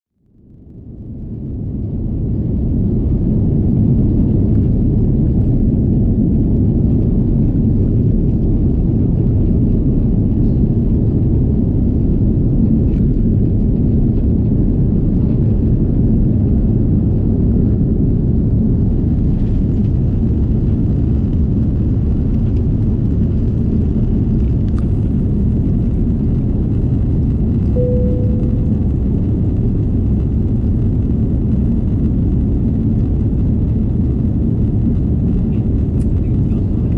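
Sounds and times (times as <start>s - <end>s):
aircraft cabin engine rumble: 0.5s - 36.9s
short single tone: 27.8s - 29.3s.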